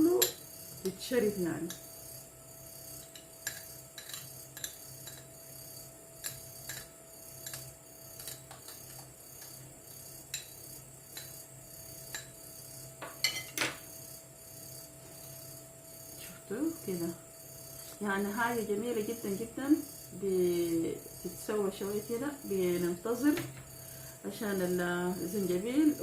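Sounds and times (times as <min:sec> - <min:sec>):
spoon clinking against cup: 0:13.1 - 0:13.7.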